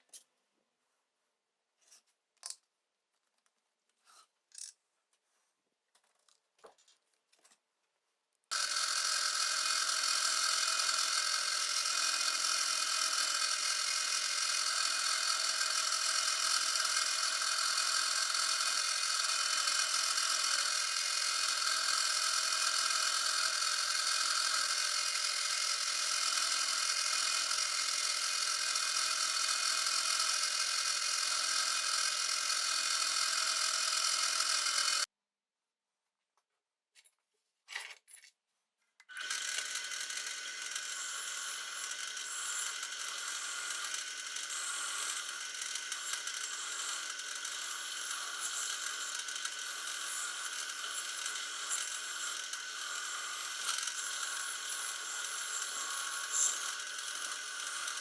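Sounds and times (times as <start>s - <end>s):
power tool running with whine: 8.5s - 35.1s, 39.1s - 58.0s.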